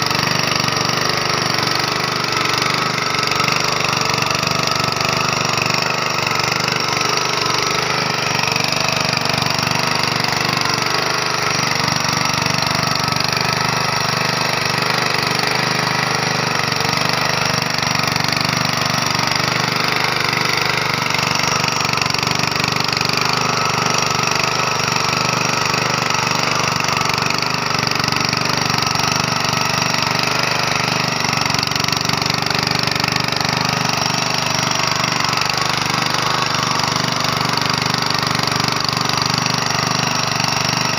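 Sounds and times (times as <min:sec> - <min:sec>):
small engine running steadily: 0:00.0 - 0:40.9.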